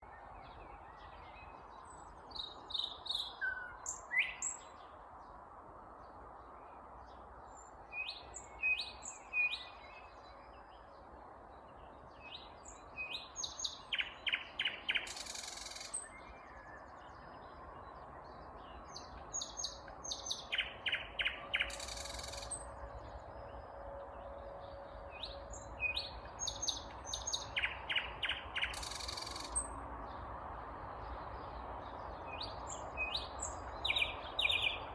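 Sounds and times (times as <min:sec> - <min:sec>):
nightingale singing: 0:00.0 - 0:04.8, 0:12.2 - 0:24.4, 0:25.0 - 0:29.8, 0:32.2 - 0:34.9.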